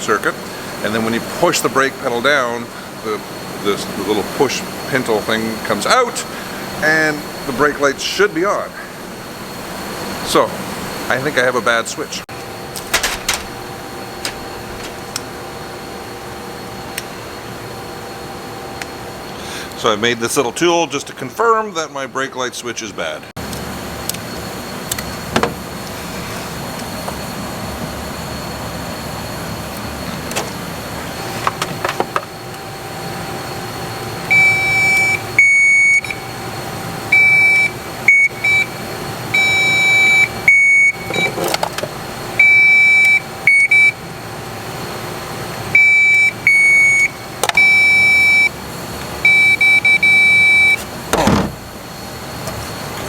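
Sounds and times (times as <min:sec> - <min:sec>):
electrical tester beeping: 0:31.5 - 0:41.5, 0:42.3 - 0:44.1, 0:45.7 - 0:48.6, 0:49.2 - 0:50.8.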